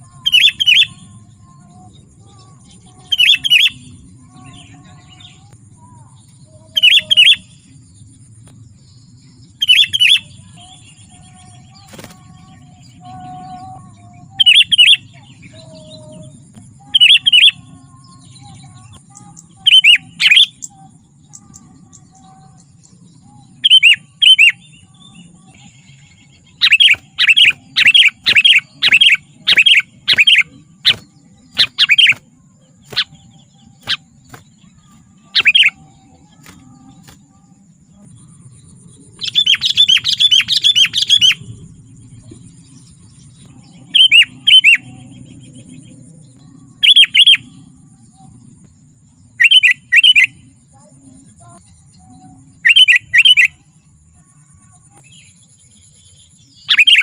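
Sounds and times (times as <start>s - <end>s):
bird calling: 9.6s - 16.1s, 26.5s - 32.2s, 32.8s - 37.2s, 56.7s - 57.0s
bird chattering: 26.6s - 32.2s, 32.8s - 37.1s.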